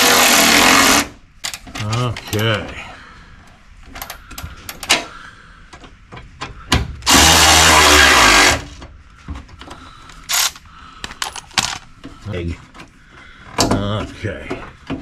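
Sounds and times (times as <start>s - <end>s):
power drill running: 0.0s - 1.2s, 7.1s - 8.8s.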